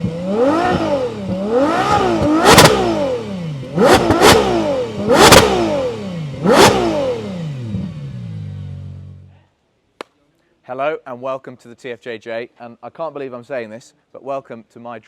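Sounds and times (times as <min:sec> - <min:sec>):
engine revving hard: 0:00.0 - 0:09.2
exhaust cracks: 0:00.6 - 0:07.1.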